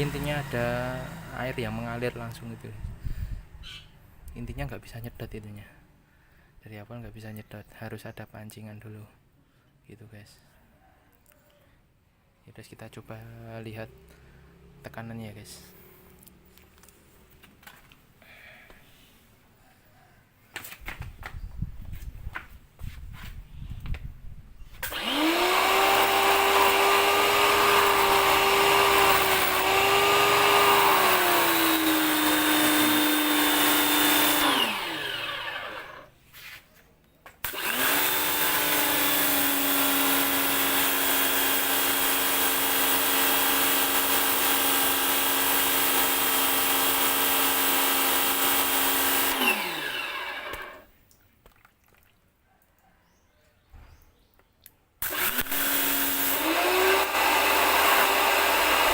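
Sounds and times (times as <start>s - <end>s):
jet cleaner motor whining: 24.9s - 36.1s, 48.5s - 50.8s.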